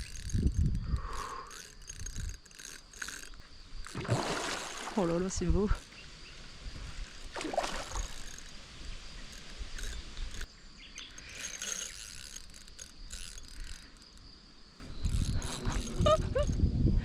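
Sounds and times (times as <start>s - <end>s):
fishing reel ratchet ticking: 0.0s - 4.0s, 8.0s - 8.6s, 9.2s - 16.6s.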